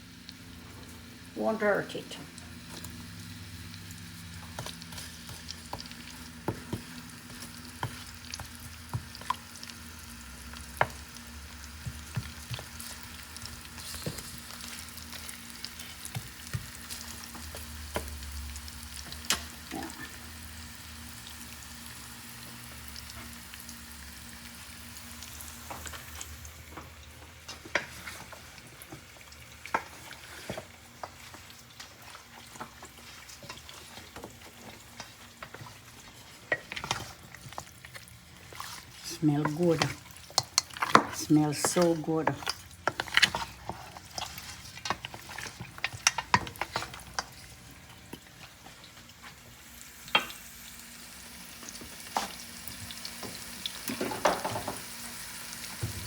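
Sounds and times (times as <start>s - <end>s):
onions sizzling in hot oil: 0.1s - 56.0s
stirring clicks: 31.0s - 47.4s.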